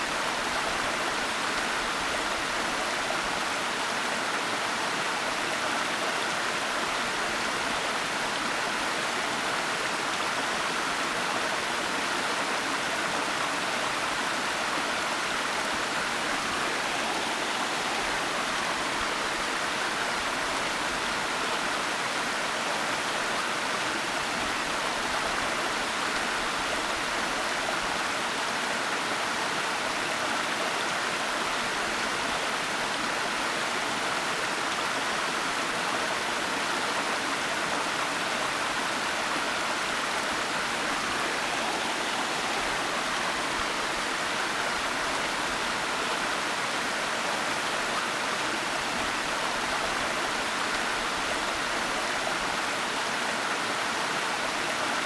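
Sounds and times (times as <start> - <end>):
waterfall rushing: 15.0 - 20.9, 38.0 - 52.9.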